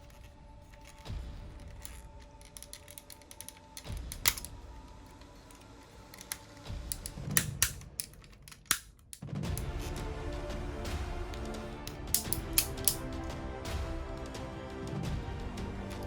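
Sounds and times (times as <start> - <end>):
plastic toy clicks and snaps: 0.0 - 9.7, 11.4 - 13.0.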